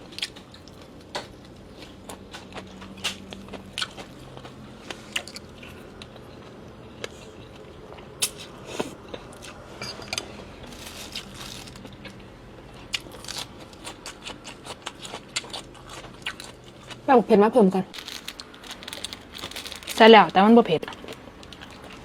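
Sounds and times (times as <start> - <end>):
chewing and mouth noises: 0.1 - 17.1.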